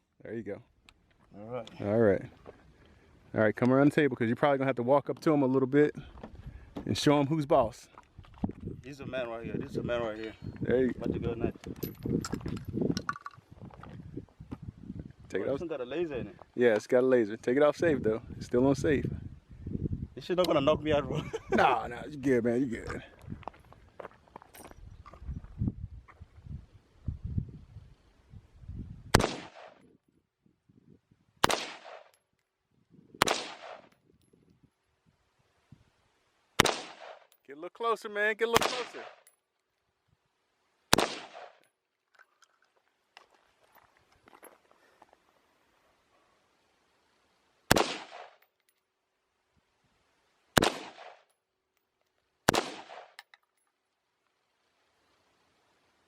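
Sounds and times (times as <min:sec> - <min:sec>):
gunshots echoing: 0:29.2 - 0:29.8, 0:31.4 - 0:32.1, 0:33.2 - 0:33.9, 0:36.6 - 0:37.3, 0:38.5 - 0:39.2, 0:40.9 - 0:41.6, 0:47.7 - 0:48.4, 0:50.6 - 0:51.2, 0:52.5 - 0:53.2
gunshots with echo: 0:29.2 - 0:29.8, 0:33.2 - 0:33.9, 0:38.6 - 0:39.2, 0:50.6 - 0:51.2.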